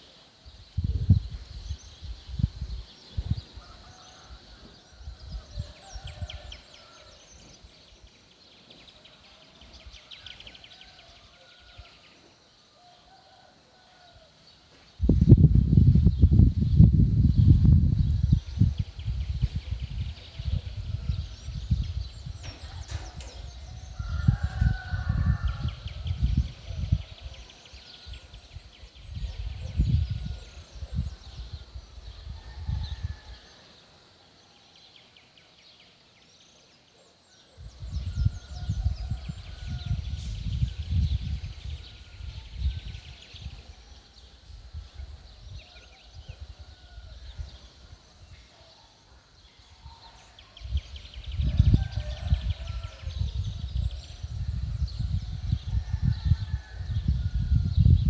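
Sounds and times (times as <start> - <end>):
wind buffeting microphone: 0.0 - 8.1, 14.9 - 33.6, 37.5 - 48.5, 49.6 - 58.0
birds calling and trilling: 0.0 - 58.0.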